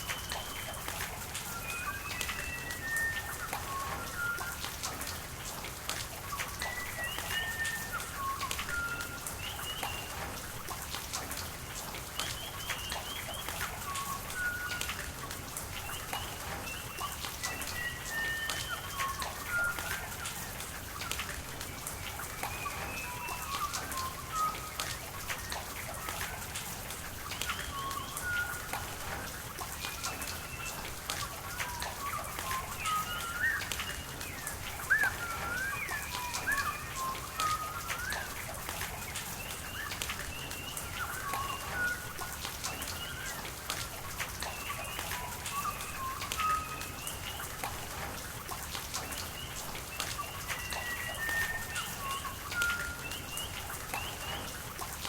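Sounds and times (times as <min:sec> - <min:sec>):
steady rain with drips: 0:00.0 - 0:55.0
birds chirping: 0:29.8 - 0:43.4.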